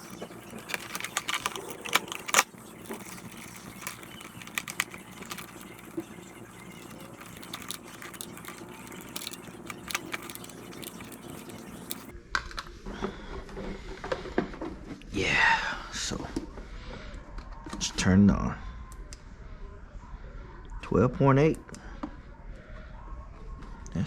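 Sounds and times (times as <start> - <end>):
hardware clicking and rattling: 0.0 - 12.1.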